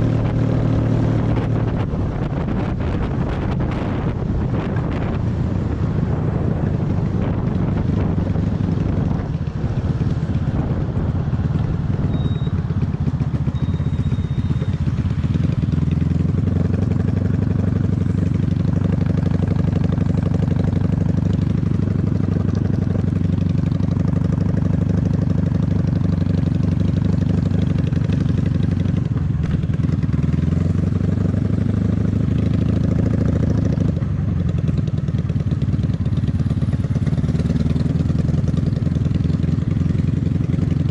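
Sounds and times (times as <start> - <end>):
wind noise: 0.0 - 14.5
motorcycle engine running: 0.0 - 40.9.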